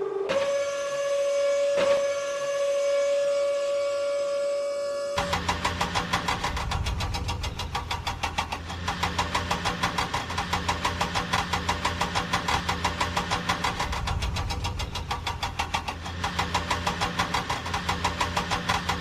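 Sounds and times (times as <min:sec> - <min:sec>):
tractor engine idling: 0:05.2 - 0:19.0.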